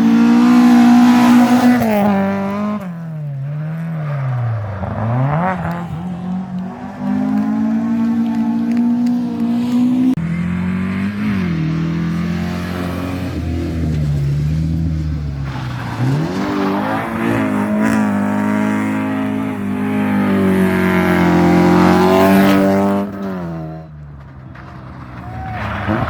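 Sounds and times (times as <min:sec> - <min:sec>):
rally car engine revving: 0:00.0 - 0:26.0.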